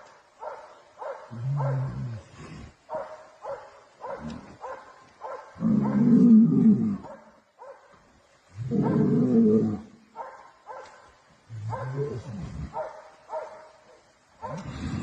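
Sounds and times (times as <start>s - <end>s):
deep animal roars: 5.6s - 7.0s.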